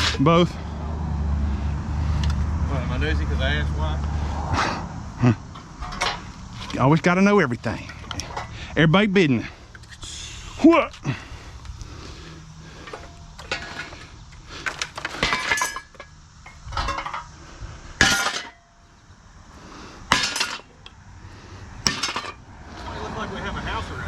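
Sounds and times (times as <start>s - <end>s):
scrap metal clanking: 5.5s - 6.9s, 12.0s - 18.8s, 20.1s - 20.8s, 21.8s - 23.0s.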